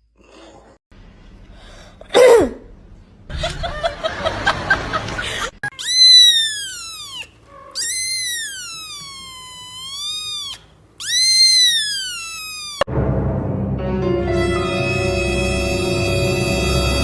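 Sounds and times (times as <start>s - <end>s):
animal giving long high cries: 5.7s - 12.9s.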